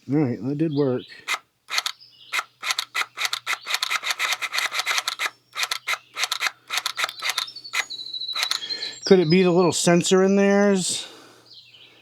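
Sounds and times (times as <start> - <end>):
valve actuator rasping clicks: 1.3 - 8.6.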